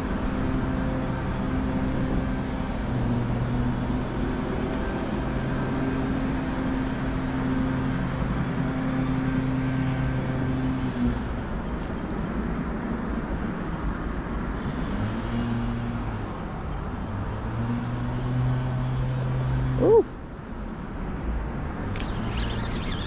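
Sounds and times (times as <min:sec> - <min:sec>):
vehicle engine humming: 0:14.2 - 0:20.2, 0:21.8 - 0:23.0.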